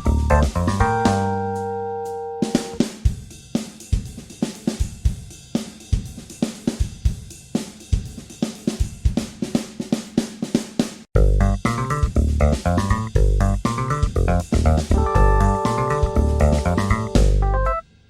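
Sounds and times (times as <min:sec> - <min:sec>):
drum kit playing a steady beat: 0:00.0 - 0:17.8.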